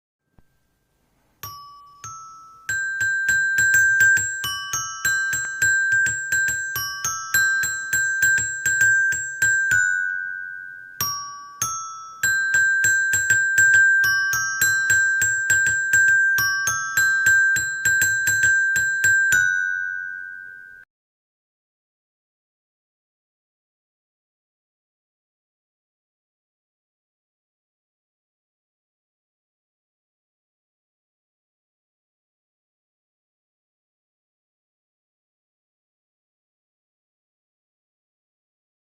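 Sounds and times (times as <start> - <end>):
bell-like chiming tune: 1.4 - 20.9.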